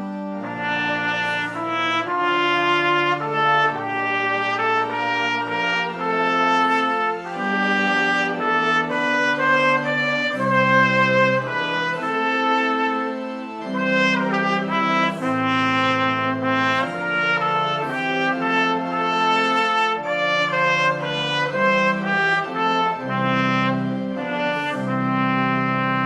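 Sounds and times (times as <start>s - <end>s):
instrumental church music: 0.0s - 26.0s.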